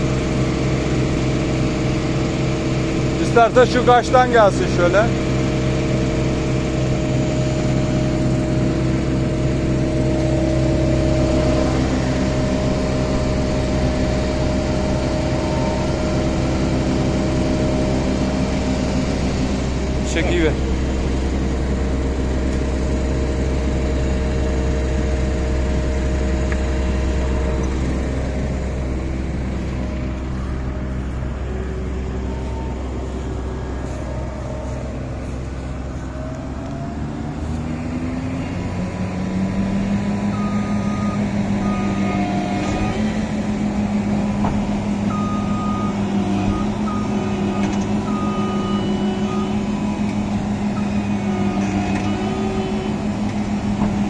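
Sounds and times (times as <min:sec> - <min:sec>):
diesel engine running and revving: 0:00.0 - 0:54.0
electronic warning beeps: 0:45.1 - 0:49.8.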